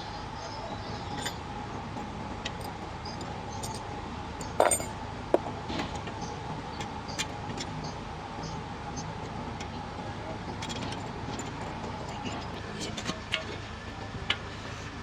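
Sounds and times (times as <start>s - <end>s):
metallic clinks of hand tools: 3.6s - 3.8s, 4.4s - 4.9s.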